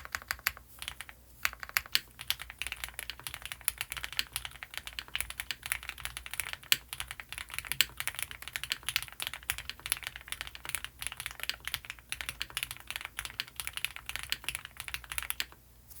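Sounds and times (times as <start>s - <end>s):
mechanical keyboard typing: 0.0s - 15.6s.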